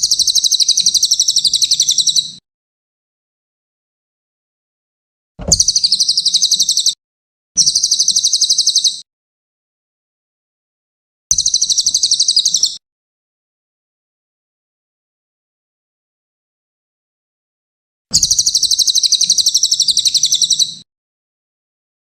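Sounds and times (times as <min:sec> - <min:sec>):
songbird trilling high chirps: 0:00.0 - 0:02.4, 0:05.4 - 0:07.0, 0:07.6 - 0:09.0, 0:11.3 - 0:12.8, 0:18.1 - 0:20.8.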